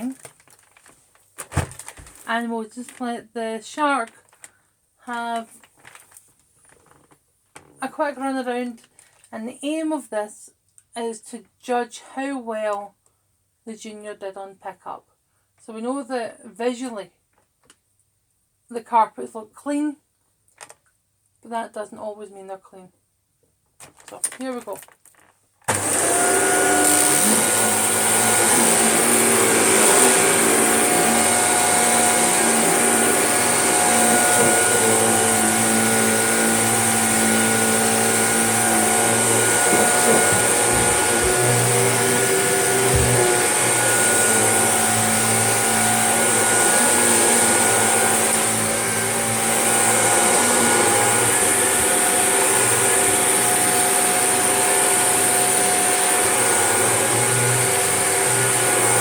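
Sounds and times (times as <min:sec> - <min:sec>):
vacuum cleaner running over carpet: 0:25.7 - 0:59.0
low bumps: 0:37.7 - 0:43.8.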